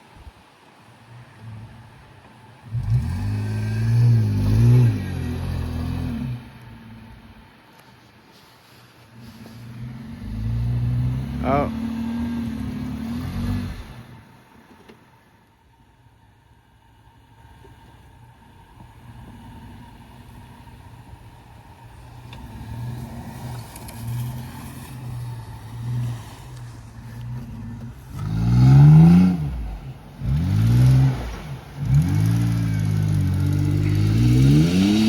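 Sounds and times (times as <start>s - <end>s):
vehicle engine revving: 2.6s - 7.6s, 9.2s - 14.4s, 17.4s - 35.0s.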